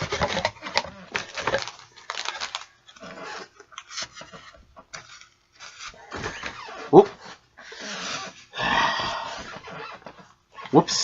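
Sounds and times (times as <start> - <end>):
packaging rustling and crinkling: 0.0 - 8.5.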